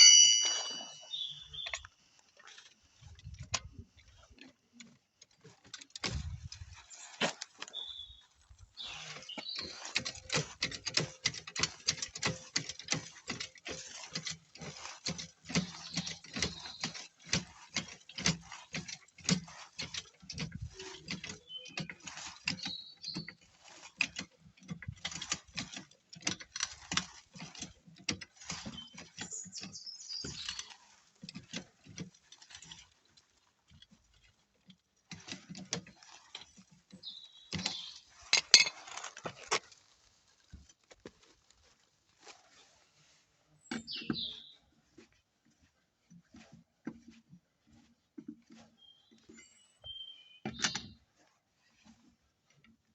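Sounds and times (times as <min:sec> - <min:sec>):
metal hand tools clinking: 0:00.0 - 0:01.3, 0:37.7 - 0:39.1.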